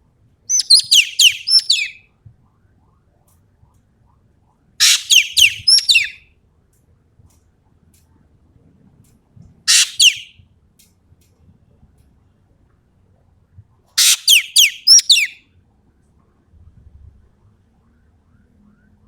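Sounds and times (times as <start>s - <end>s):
bird giving shrill calls: 0.5s - 2.0s, 4.8s - 6.2s, 9.7s - 10.3s, 14.0s - 15.4s.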